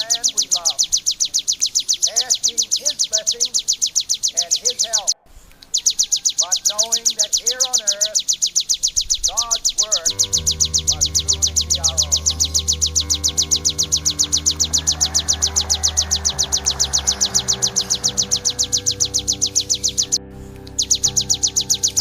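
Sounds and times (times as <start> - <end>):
man's voice: 0.0 - 0.9, 2.1 - 3.6, 4.4 - 5.2, 9.2 - 12.6
bird calling sharp chirps: 0.0 - 22.0
music with long held notes: 10.1 - 22.0.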